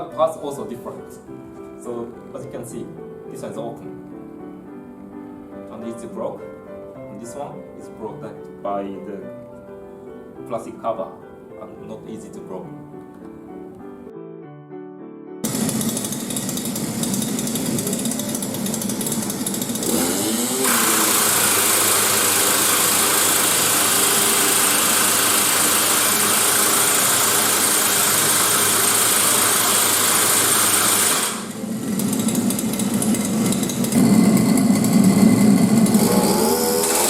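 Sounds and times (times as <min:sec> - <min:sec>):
impact wrench engine revving: 0:15.4 - 0:37.0.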